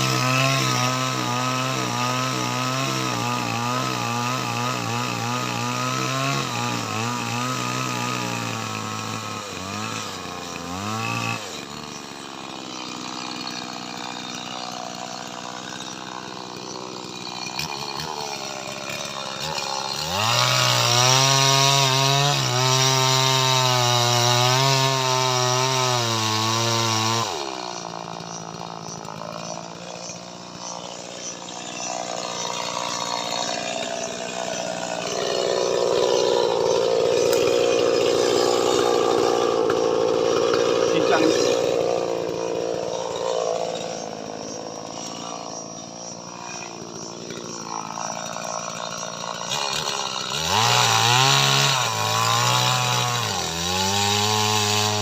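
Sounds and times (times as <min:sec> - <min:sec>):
chainsaw cutting wood: 0:00.0 - 0:55.0.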